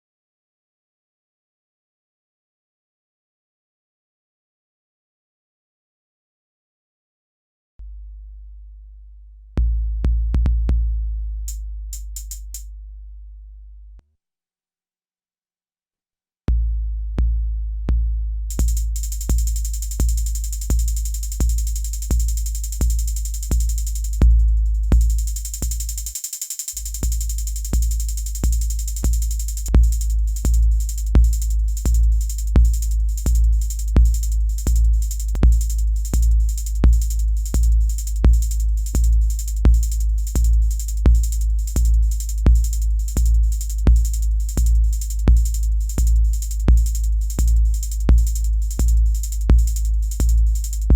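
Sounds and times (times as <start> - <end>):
electronic bass drum: 7.8 - 13.9, 16.5 - 50.9
hissing hi-hat noise: 12.0 - 12.6, 18.6 - 50.9.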